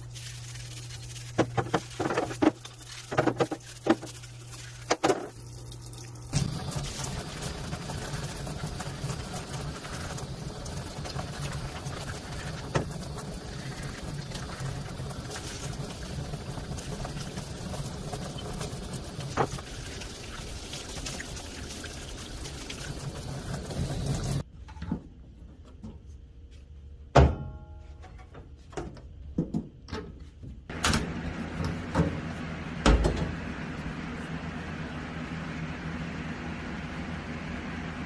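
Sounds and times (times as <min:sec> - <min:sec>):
water splashing on metal: 0:00.0 - 0:24.4.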